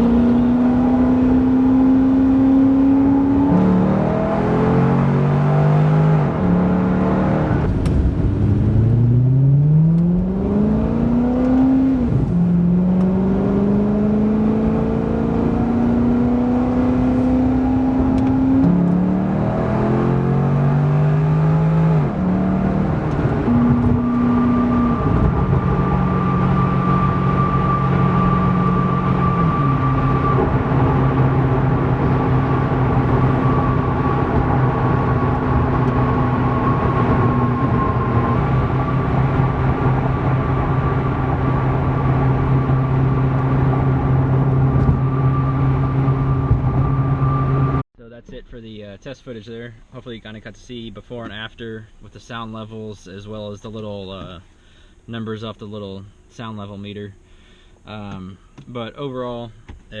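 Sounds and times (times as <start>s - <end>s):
car engine revving: 0.0s - 47.8s
tyre and road noise: 6.3s - 20.4s.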